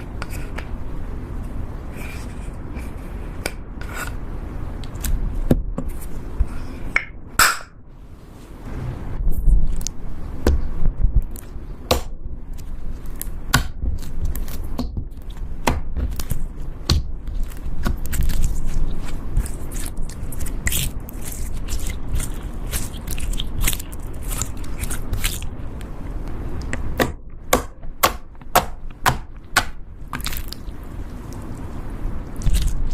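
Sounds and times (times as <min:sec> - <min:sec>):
low rumble: 0:08.6 - 0:11.3.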